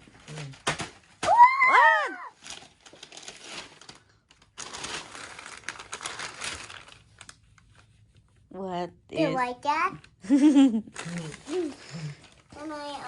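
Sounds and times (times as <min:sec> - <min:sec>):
packaging crinkling and rustling: 0:02.2 - 0:08.4, 0:10.8 - 0:13.0.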